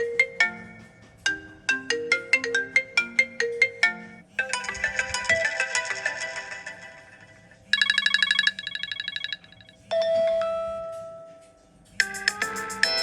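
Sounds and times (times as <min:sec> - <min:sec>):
phone ringtone chimes: 0:02.0 - 0:10.8
held electronic tone: 0:07.6 - 0:09.9.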